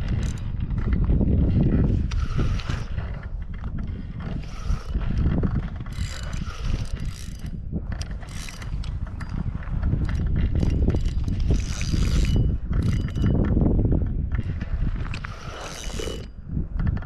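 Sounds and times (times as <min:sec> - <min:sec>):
fishing reel clicking: 0:00.0 - 0:00.5, 0:04.3 - 0:13.4, 0:15.1 - 0:16.4.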